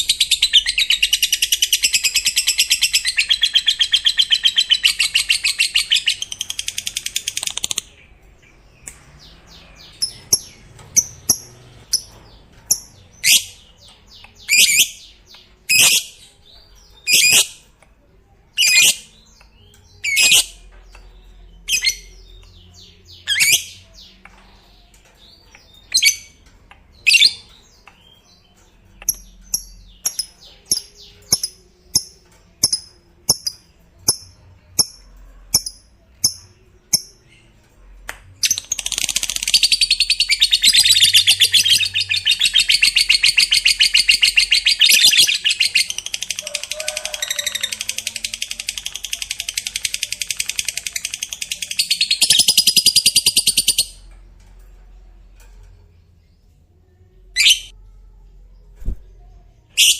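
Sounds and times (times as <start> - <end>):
high-pitched bird chirps: 0.0 - 8.2, 8.9 - 17.6, 18.6 - 24.6, 38.4 - 54.1, 57.3 - 58.2, 59.7 - 59.9.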